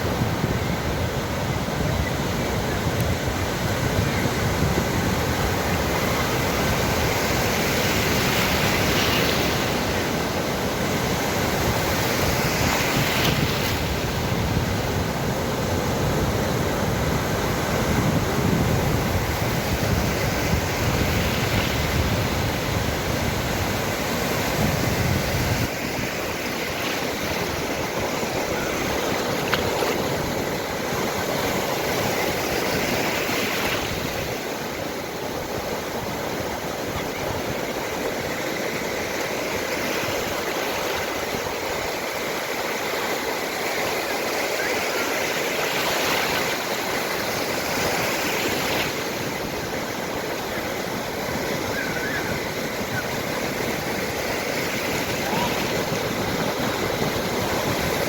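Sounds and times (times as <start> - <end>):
sea waves washing onto shore: 0.0 - 58.0.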